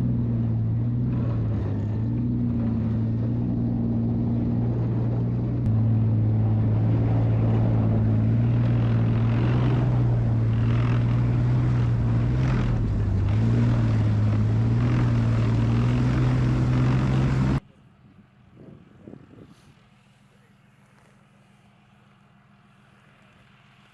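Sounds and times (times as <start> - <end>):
tank diesel engine droning: 0.0 - 19.0.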